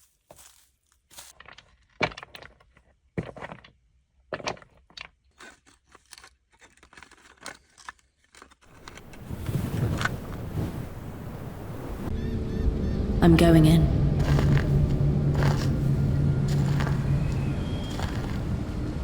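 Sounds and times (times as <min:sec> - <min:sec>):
crunching footsteps: 0:00.0 - 0:02.6, 0:14.2 - 0:19.0
low rumbling noise: 0:08.7 - 0:19.0.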